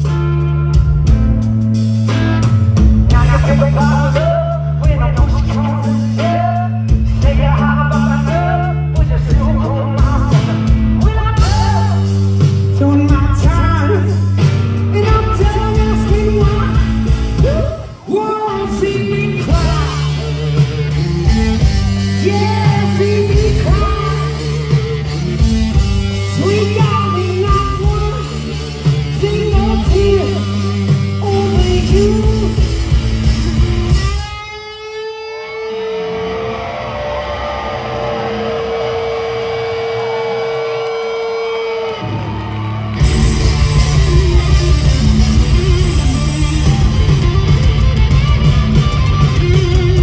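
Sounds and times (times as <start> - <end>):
rock band playing blues-rock: 0.0 - 50.0
person singing: 3.1 - 34.4.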